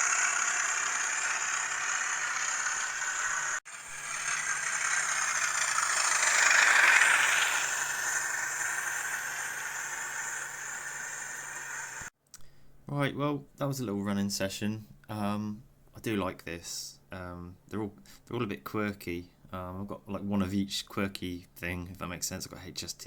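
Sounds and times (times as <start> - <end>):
diesel engine sound from small speaker: 0.0 - 12.1
model train rattling on track: 0.0 - 12.1.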